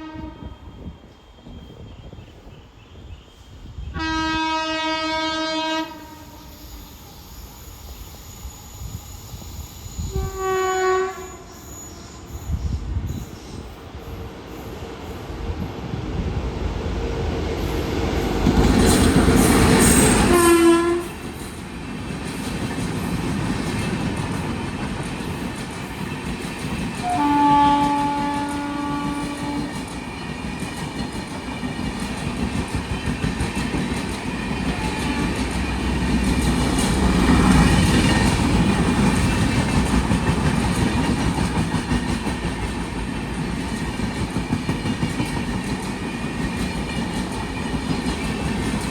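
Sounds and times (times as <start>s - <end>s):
train horn blasts: 0.0s - 1.0s, 3.9s - 7.0s, 10.0s - 12.4s, 19.8s - 21.3s, 27.0s - 29.8s, 34.7s - 35.6s
train wheels rumbling: 4.5s - 48.9s
wheels clickety-clack on rail joints: 17.5s - 48.9s.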